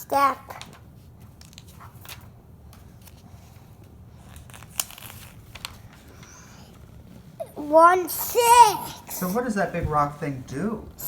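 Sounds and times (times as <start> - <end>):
faint rustling of plastic pieces: 0.4 - 7.8.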